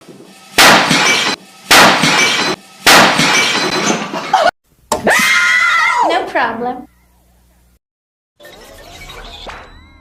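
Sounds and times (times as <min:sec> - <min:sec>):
glass breaking crashes: 0:00.6 - 0:04.2.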